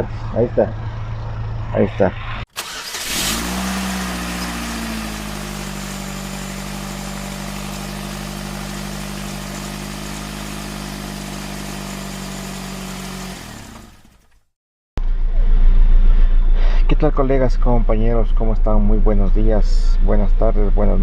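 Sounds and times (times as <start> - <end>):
car engine idling with misfire: 2.6 - 14.5.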